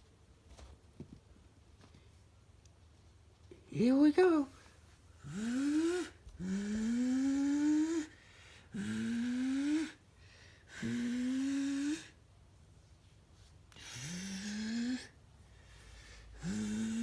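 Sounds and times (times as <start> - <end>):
person breathing: 4.6 - 12.2, 13.7 - 17.0
person imitating bus engine: 5.2 - 10.0, 10.7 - 12.2, 13.8 - 15.2, 16.4 - 17.0.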